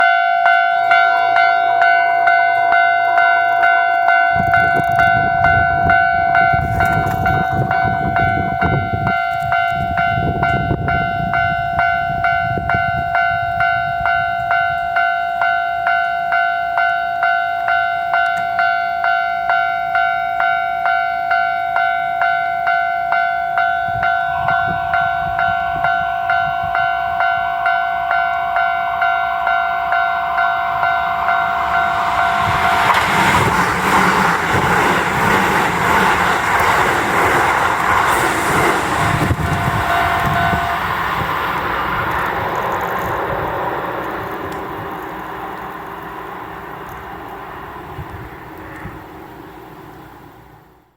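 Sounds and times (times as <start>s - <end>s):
level-crossing warning bell: 0.0s - 50.7s
approaching train rush: 0.0s - 50.9s
low rumble: 30.5s - 48.3s.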